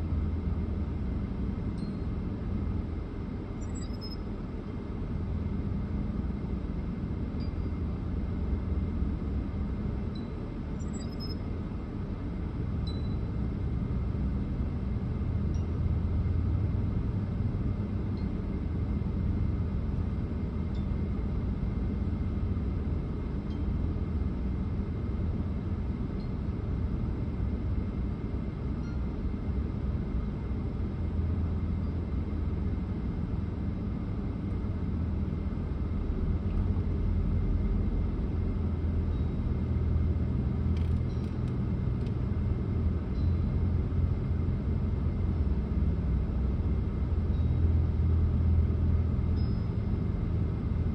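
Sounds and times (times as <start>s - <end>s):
faint light clinks: 49.4s - 49.8s.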